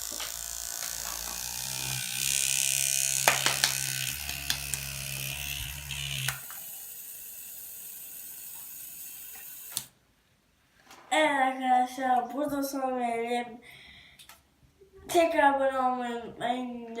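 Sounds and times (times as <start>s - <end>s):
toy motor whirring: 0.0s - 10.0s.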